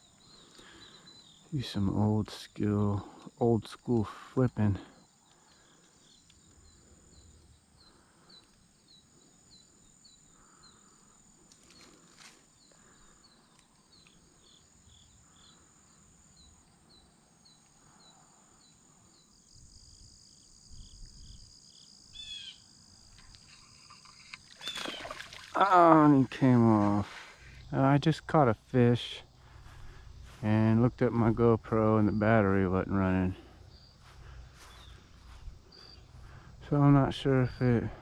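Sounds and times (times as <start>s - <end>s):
faint insects chirping: 0.0s - 38.0s
steady high insect trill: 0.0s - 38.0s
short falling bird call: 24.6s - 25.8s.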